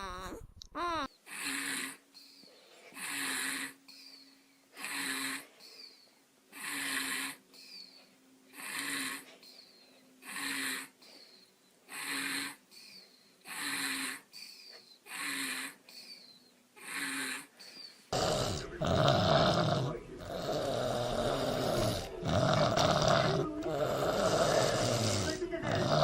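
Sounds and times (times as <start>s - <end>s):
baby grunting: 0.0s - 2.0s, 11.9s - 12.6s, 13.5s - 14.3s, 16.8s - 26.0s
baby snoring: 0.0s - 7.9s, 8.5s - 9.6s, 10.2s - 11.2s, 11.9s - 26.0s.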